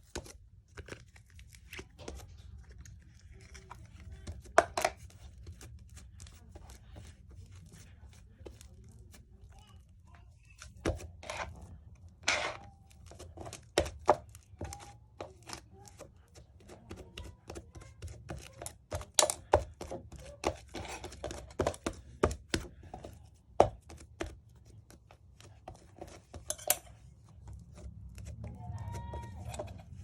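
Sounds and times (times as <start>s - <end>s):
small hard objects tapping: 4.2s - 5.1s, 12.2s - 25.1s.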